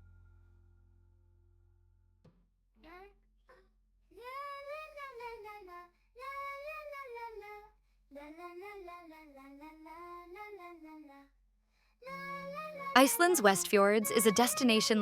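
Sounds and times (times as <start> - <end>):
high voice singing: 12.1 - 15.0.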